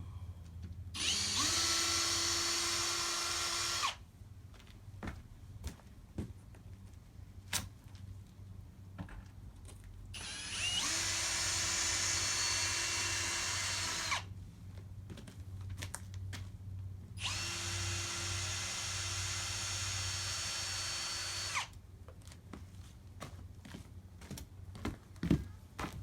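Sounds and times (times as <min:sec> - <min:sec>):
cordless drill whining: 0:01.0 - 0:04.0, 0:10.2 - 0:14.3, 0:17.2 - 0:21.7.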